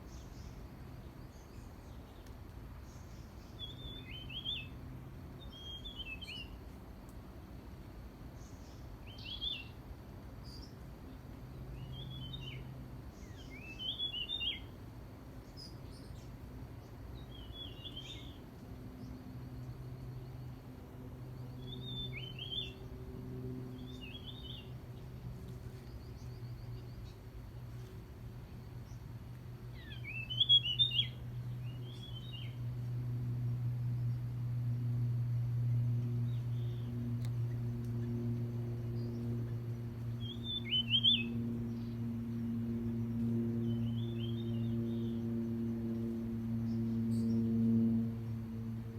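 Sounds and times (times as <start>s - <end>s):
low steady hum: 0.0s - 48.9s
birds chirping: 29.7s - 32.7s, 36.0s - 48.5s.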